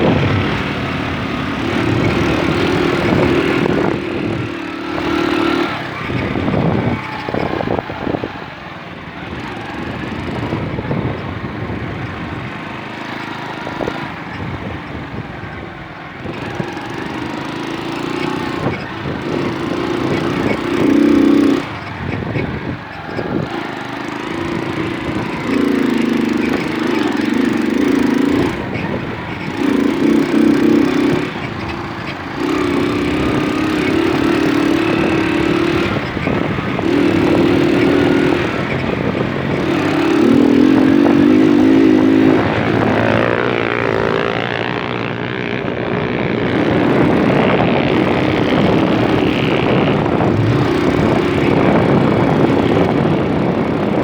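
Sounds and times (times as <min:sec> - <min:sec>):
moped engine revving: 0:00.0 - 0:54.0
steady rushing noise: 0:23.3 - 0:54.0.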